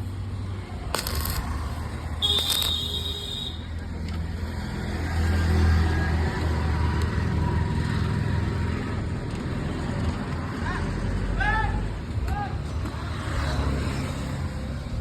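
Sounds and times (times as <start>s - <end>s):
sharp crackles: 0.9s - 3.6s.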